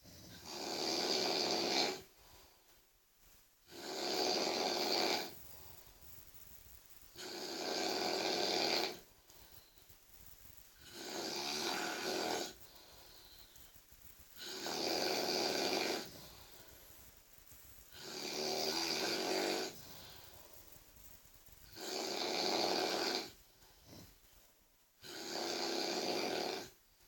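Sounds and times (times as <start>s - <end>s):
person snoring loudly: 0.0s - 2.1s, 3.7s - 5.4s, 7.2s - 9.1s, 10.8s - 12.6s, 14.4s - 16.3s, 17.9s - 19.9s, 21.7s - 23.4s, 25.0s - 26.8s
quiet breaths: 0.0s - 27.0s.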